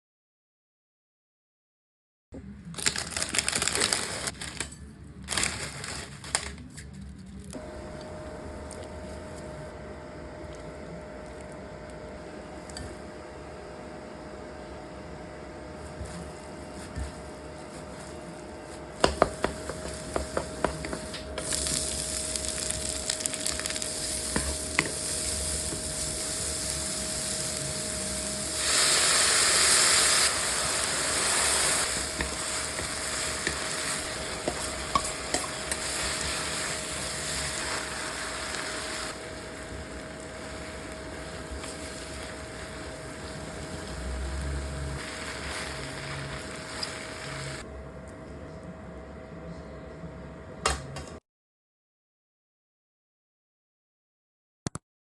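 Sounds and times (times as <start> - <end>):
food sizzling in hot oil: 19.0 - 47.6.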